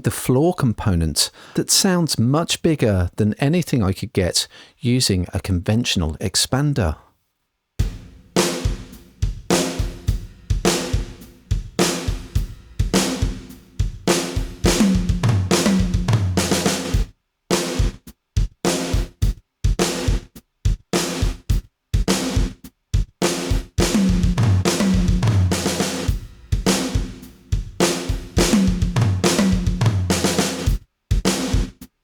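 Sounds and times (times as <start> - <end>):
drum kit groove: 7.8 - 32.0.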